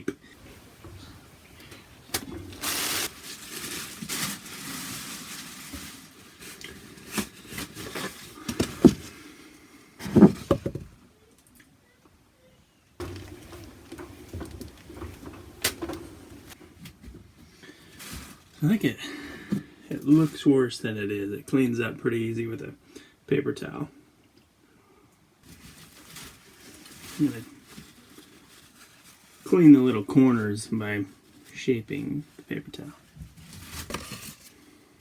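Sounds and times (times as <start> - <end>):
paper towels wiping drum: 0.4 - 9.2, 13.0 - 18.8
handling knocks: 10.0 - 11.0, 13.0 - 17.2.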